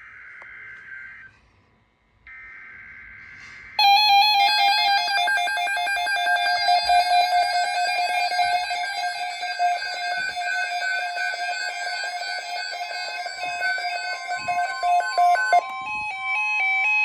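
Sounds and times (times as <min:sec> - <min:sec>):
warbling electronic alarm tone: 0:03.0 - 0:17.0.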